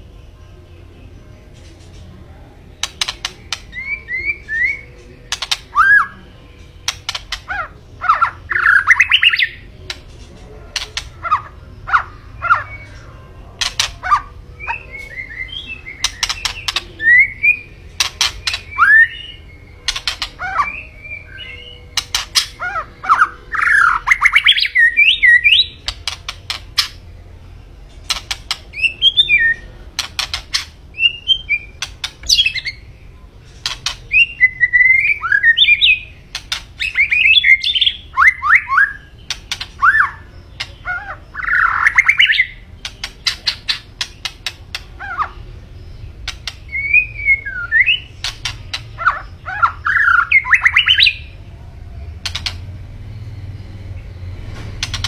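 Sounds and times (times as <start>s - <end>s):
bird sharp clicks: 2.8s - 3.9s, 5.3s - 5.8s, 6.8s - 7.6s, 13.6s - 14.0s, 16.0s - 16.9s, 18.0s - 19.2s, 19.9s - 20.4s, 21.9s - 22.6s, 23.9s - 27.0s, 28.1s - 29.2s, 30.0s - 30.8s, 33.6s - 34.3s, 36.3s - 37.6s, 39.3s - 40.8s, 41.4s - 45.0s, 46.2s - 47.0s, 47.9s - 49.0s, 52.2s - 52.7s, 54.7s - 55.0s
bird singing whistled phrases: 2.9s - 5.0s, 5.7s - 6.2s, 7.4s - 9.6s, 14.0s - 17.7s, 18.4s - 25.9s, 28.7s - 29.7s, 34.1s - 36.2s, 36.8s - 42.6s, 46.7s - 48.2s, 49.0s - 51.3s.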